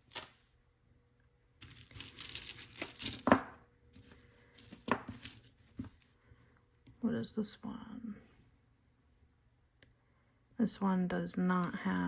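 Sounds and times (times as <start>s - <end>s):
jewelry clinking: 1.6s - 5.9s.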